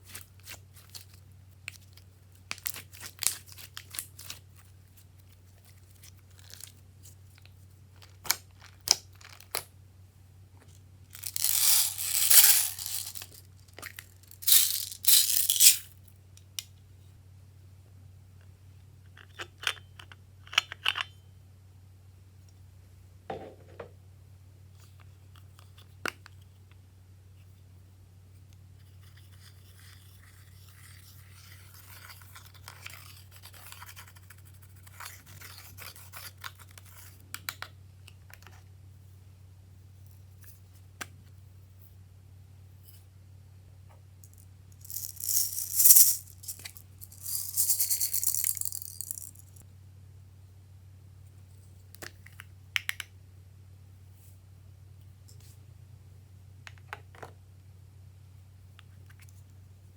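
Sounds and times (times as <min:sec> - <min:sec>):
containers clicking and tapping: 0:11.2 - 0:15.8, 0:44.3 - 0:49.6.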